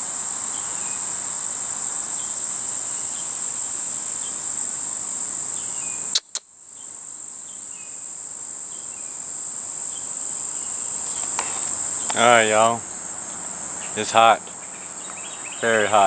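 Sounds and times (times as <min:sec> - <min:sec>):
high-pitched insect chorus: 0:00.0 - 0:16.0
sharp clicks: 0:06.1 - 0:06.5.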